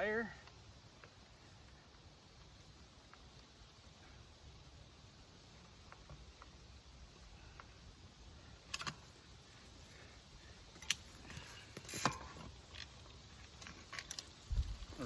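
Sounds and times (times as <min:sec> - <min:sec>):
metallic clicks of bike parts: 0:08.5 - 0:09.3, 0:10.7 - 0:14.9.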